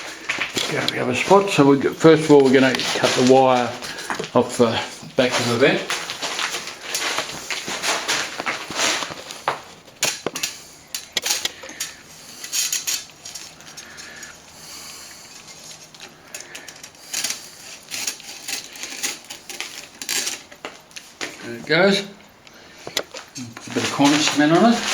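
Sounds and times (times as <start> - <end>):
wire scraping: 0.0 - 21.5, 22.8 - 24.9.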